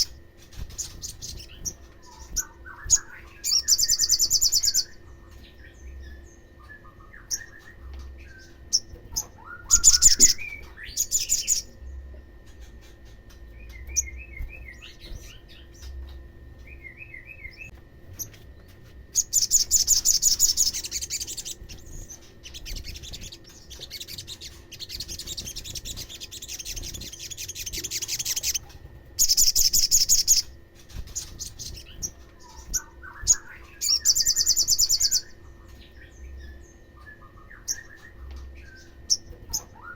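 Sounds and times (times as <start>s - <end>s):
bird high rapid trills: 0.0s - 5.9s, 19.1s - 35.4s
faint steady hum: 0.0s - 39.9s.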